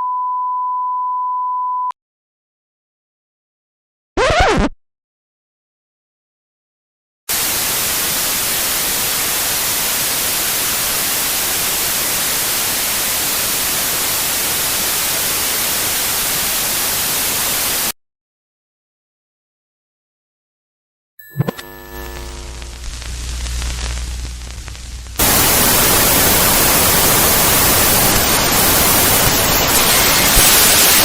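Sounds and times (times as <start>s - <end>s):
tv static hiss: 7.3s - 17.9s, 21.4s - 31.0s.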